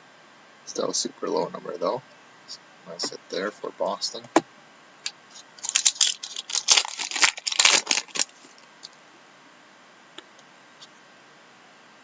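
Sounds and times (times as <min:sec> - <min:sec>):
foil wrapper crinkling and tearing: 0:05.3 - 0:08.7.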